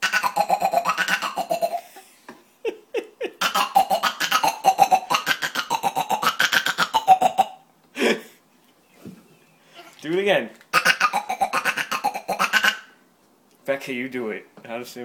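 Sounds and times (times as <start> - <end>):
toddler croaky rattling voice: 0.0 - 1.8, 3.4 - 7.6, 10.7 - 12.9
toddler grunting: 0.0 - 1.9, 3.4 - 7.6, 10.7 - 12.9.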